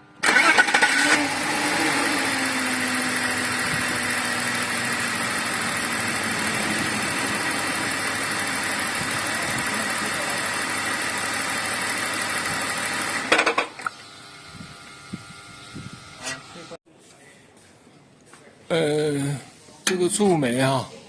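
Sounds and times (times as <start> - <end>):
car engine idling: 2.3 - 13.3.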